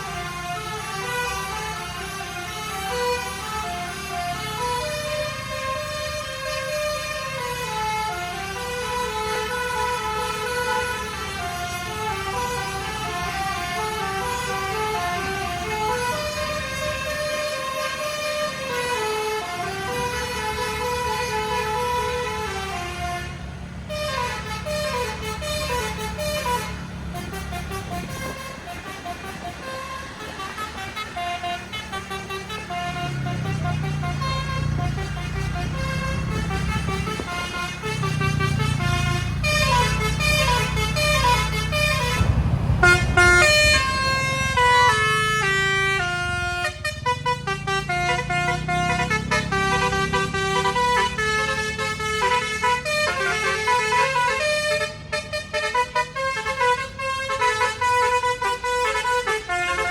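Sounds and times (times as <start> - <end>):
bus horn playing a melody: 0.0 - 59.9
low rumble of bus engine: 0.0 - 59.9.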